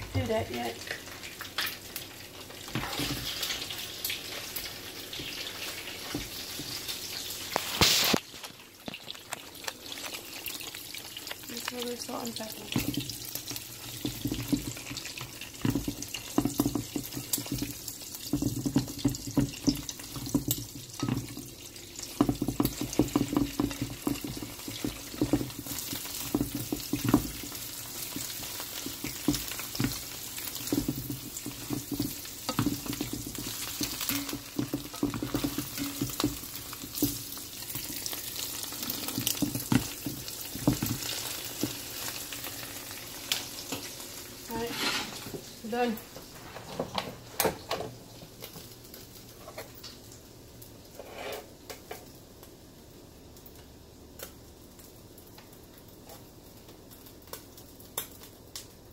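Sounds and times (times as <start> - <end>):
steady sizzling hiss: 0.0 - 58.9
utensil scraping a dish: 44.6 - 45.2, 51.0 - 51.5.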